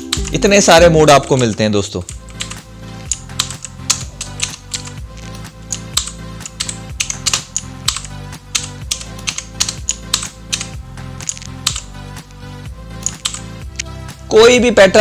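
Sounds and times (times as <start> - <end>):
background music: 0.0 - 15.0
mechanical keyboard clicks: 1.2 - 5.0, 5.7 - 11.9, 13.0 - 13.9.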